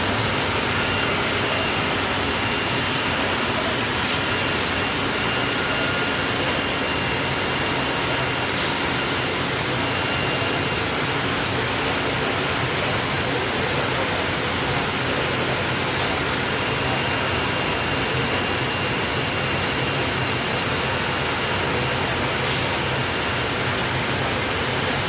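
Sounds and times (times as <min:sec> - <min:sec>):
thin high whine: 0:00.0 - 0:10.8
cnc router running: 0:00.0 - 0:25.0.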